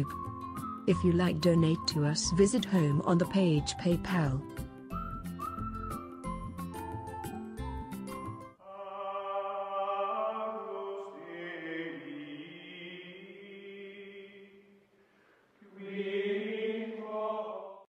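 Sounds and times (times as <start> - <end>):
choir-like held tones music: 8.6 - 14.7, 15.6 - 17.9.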